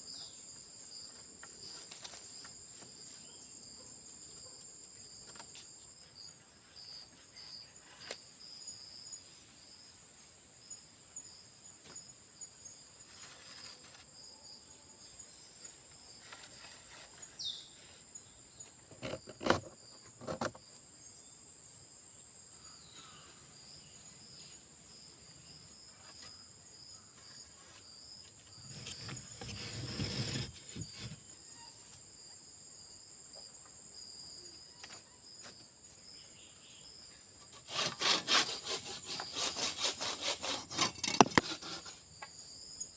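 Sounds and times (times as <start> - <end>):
forest insects chorus: 0.0 - 42.9
scraping rustle: 13.0 - 14.1, 16.1 - 18.2, 27.2 - 32.0, 37.5 - 42.0.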